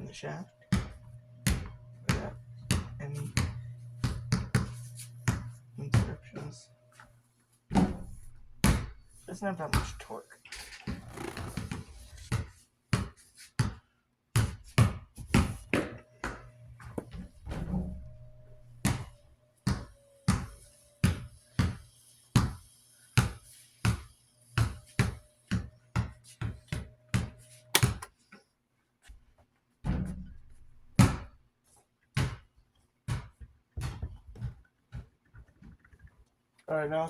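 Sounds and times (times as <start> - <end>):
fan motor humming: 0.0 - 7.0, 7.7 - 9.8, 16.1 - 19.2, 26.9 - 28.1.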